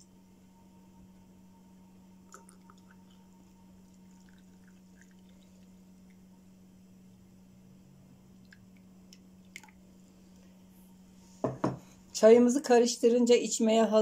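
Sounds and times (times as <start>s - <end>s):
low hum: 0.0s - 12.2s.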